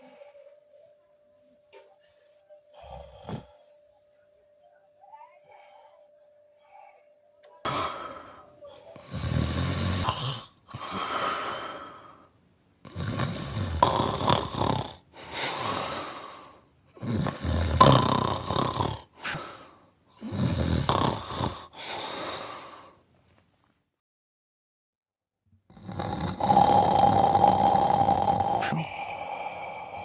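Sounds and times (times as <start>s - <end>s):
man snoring: 2.8s - 3.6s, 7.6s - 8.4s, 9.0s - 23.0s, 25.7s - 30.0s.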